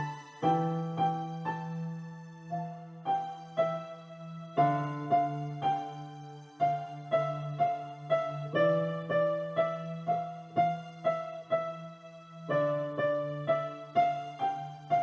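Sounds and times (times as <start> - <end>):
electronic keyboard piano piece: 0.0 - 15.0.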